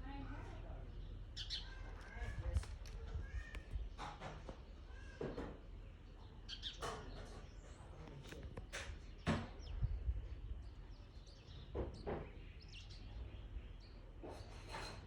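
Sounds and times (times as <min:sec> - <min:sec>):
low wind-like rumble: 0:00.0 - 0:04.1, 0:08.4 - 0:11.1.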